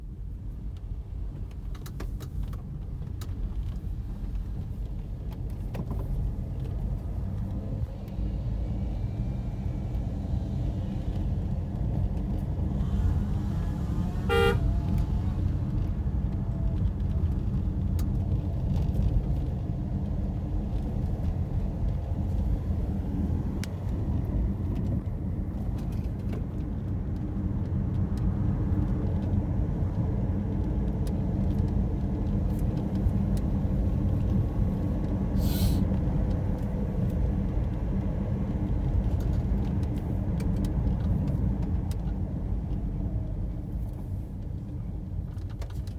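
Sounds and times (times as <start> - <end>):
vehicle engine low rumble: 0.0 - 45.9
short horn toot: 14.1 - 15.1.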